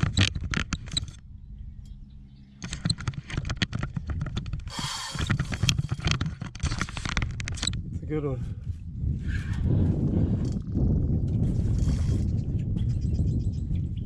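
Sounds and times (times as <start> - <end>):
low hum: 0.0 - 14.0
fishing reel clicking rapidly: 4.7 - 6.0.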